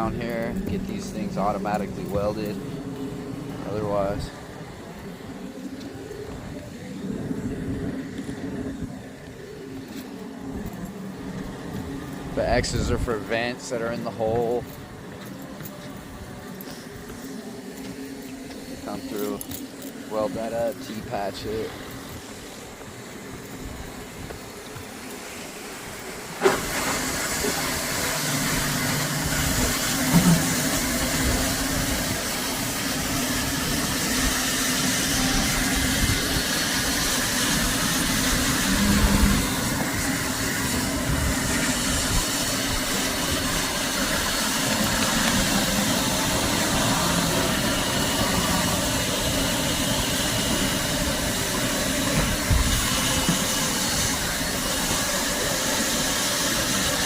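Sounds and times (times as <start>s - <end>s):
hot-air welder hissing: 16.6s - 57.0s.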